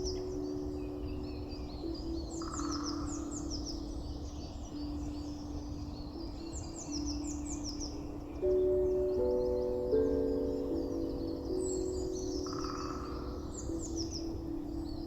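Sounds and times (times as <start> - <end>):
songbird chirping: 0.0 - 15.0.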